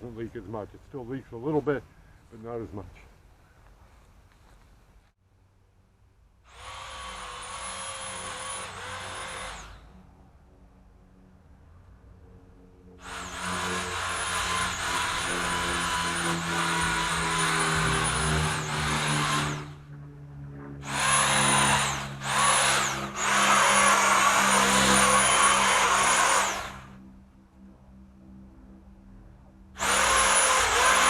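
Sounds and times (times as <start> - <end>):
chainsaw cutting: 6.5 - 9.9, 13.0 - 19.8, 20.8 - 27.0, 29.8 - 31.0.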